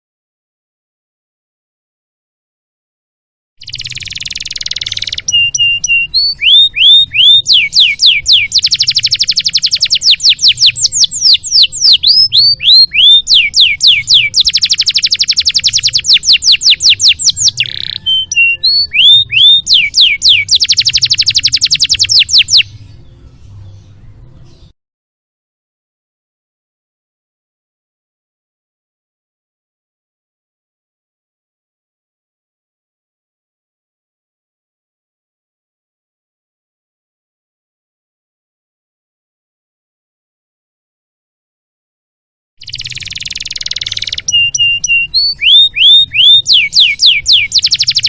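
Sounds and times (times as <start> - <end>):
canary singing: 3.6 - 24.7, 42.6 - 48.0.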